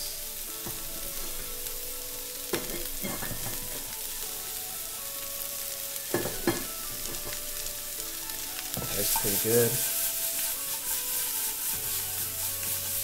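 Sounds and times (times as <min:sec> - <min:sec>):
vegetables sizzling in a pan: 0:00.0 - 0:13.0
utensil knocking on cookware: 0:06.1 - 0:07.4.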